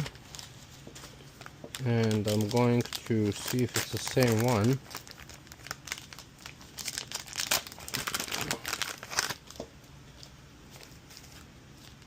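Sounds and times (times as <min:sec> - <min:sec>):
plastic packaging crinkling: 0:00.0 - 0:09.6.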